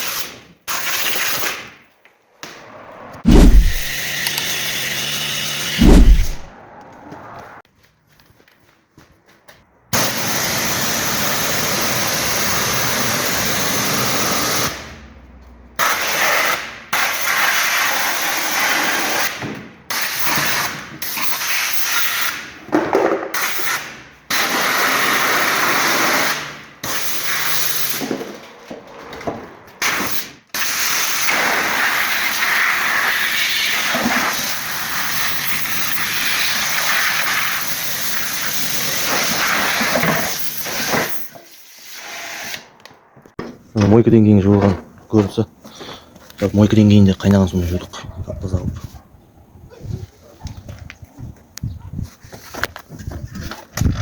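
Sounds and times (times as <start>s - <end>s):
pressure washer spraying: 3.3s - 6.5s.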